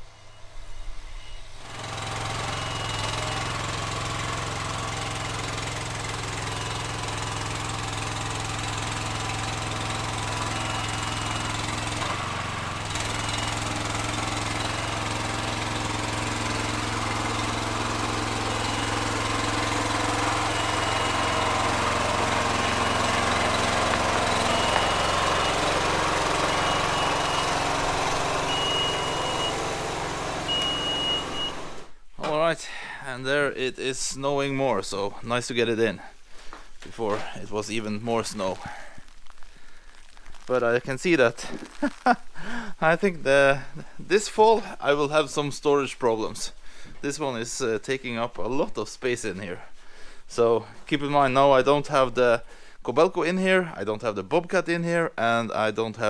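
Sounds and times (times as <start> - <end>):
lift engine running: 0.0 - 32.0
travel alarm beeps: 23.4 - 29.7, 30.5 - 31.7.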